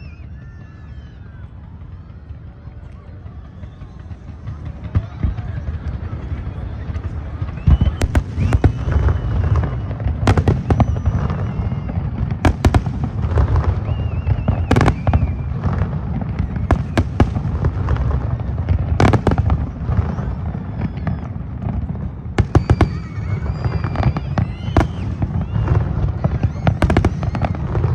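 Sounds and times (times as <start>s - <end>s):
sharp firework cracks: 7.3s - 27.9s.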